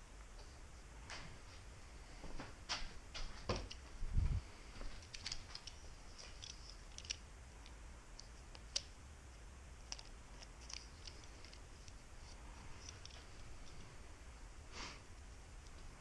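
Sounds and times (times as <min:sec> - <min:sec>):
tape clicks and crackles: 0:04.8 - 0:14.0.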